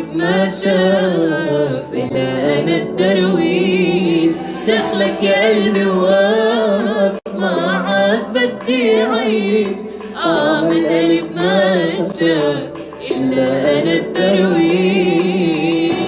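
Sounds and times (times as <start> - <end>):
woman singing ornamented notes: 3.4 - 9.6.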